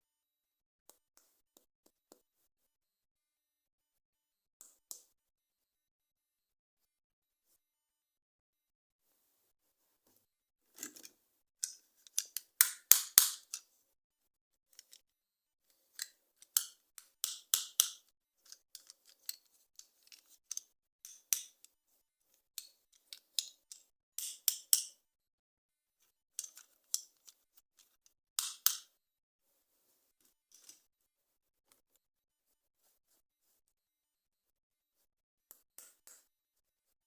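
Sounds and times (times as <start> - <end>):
packaging snips and clicks: 10.8 - 13.6, 15.9 - 21.6.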